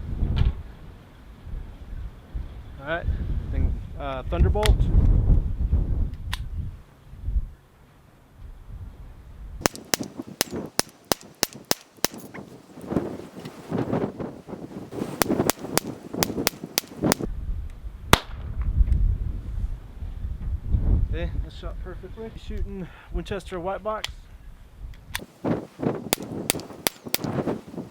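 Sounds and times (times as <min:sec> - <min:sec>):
pistol shots: 0:09.6 - 0:12.3, 0:26.1 - 0:27.3.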